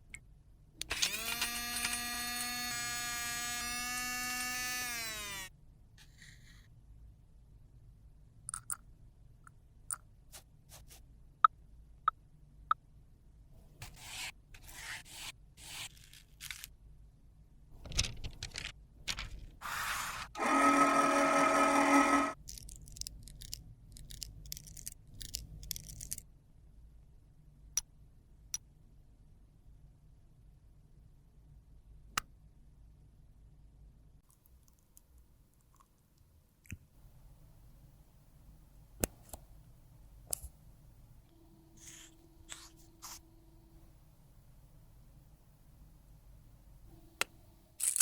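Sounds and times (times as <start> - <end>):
small electric motor buzzing: 0.9 - 5.5, 19.8 - 22.4.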